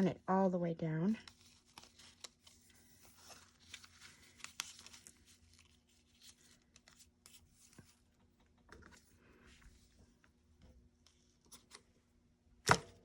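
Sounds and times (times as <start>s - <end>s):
ribbon and paper rustling: 1.1s - 10.2s.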